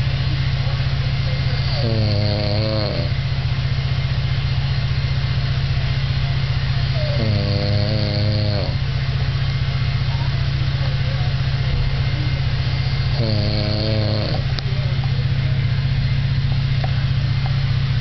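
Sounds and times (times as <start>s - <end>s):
low pulsing drone: 0.0s - 18.0s
man snoring: 1.6s - 3.2s, 7.0s - 8.8s, 12.9s - 14.5s.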